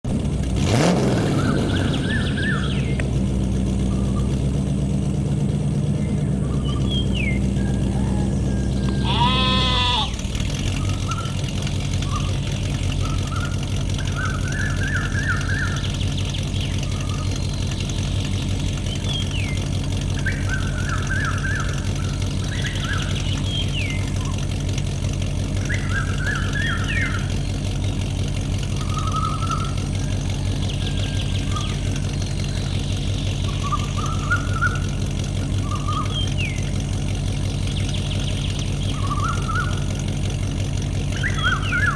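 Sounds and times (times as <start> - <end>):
small engine knocking: 0.1 - 41.9
high falling chirps: 5.9 - 24.4, 28.6 - 40.0
sheep bleating: 8.2 - 10.3.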